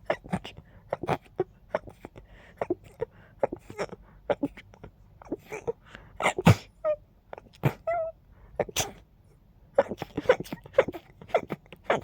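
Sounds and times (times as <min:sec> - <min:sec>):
muffled sneeze: 0:06.2 - 0:06.8, 0:08.6 - 0:09.1.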